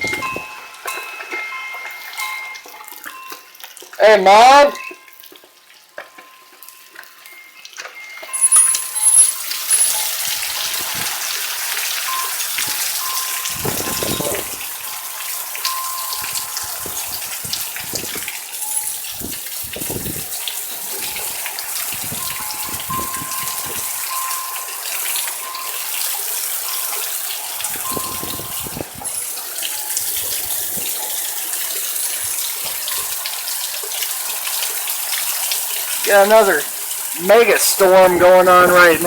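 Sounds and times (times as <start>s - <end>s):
heavy rain pouring: 8.3s - 39.0s.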